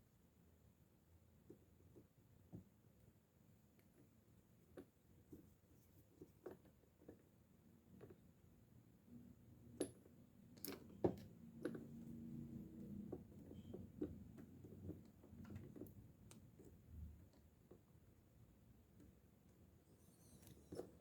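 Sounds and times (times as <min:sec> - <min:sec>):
small parts clicking and tapping: 0:09.6 - 0:18.1.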